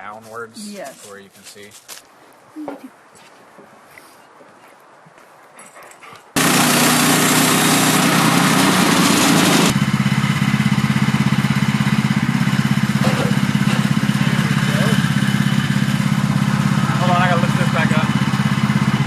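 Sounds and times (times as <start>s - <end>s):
gasoline engine running and idling: 6.4s - 19.0s.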